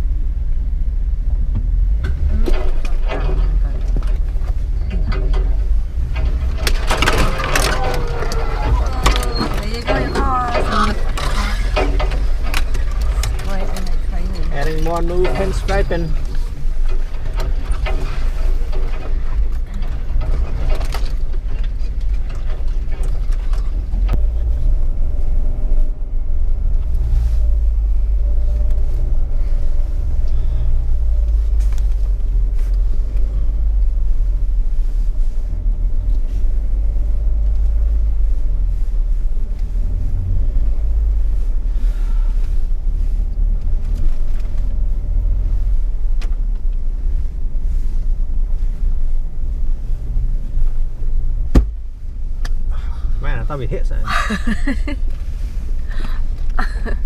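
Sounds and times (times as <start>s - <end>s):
vehicle engine and tyres rumbling: 0.0s - 57.0s
vehicle bumping knocks: 51.5s - 51.8s.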